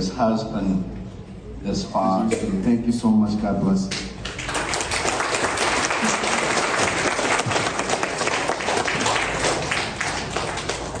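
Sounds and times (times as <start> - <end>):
audience applauding: 4.2 - 11.0.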